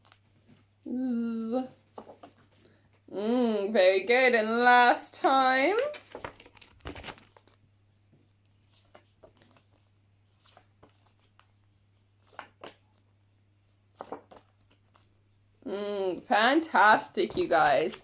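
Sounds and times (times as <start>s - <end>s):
paper cards rustling and tapping: 1.8s - 3.0s, 5.2s - 15.2s, 16.6s - 18.0s.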